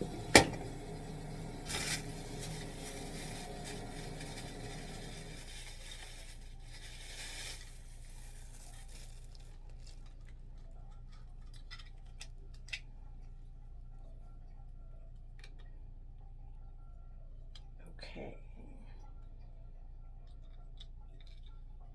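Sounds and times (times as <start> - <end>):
steady low hum: 0.0 - 11.5
packaging rustling: 0.0 - 12.2.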